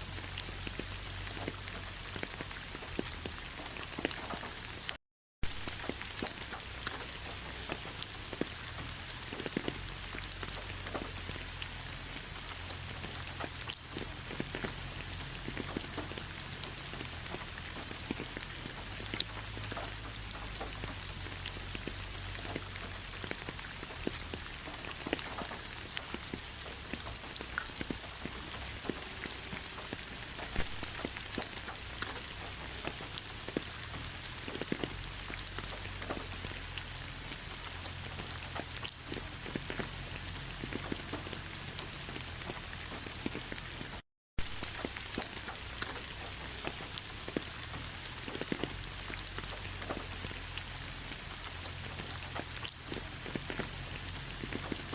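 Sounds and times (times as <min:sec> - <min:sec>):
rain falling on leaves: 0:00.0 - 0:54.9.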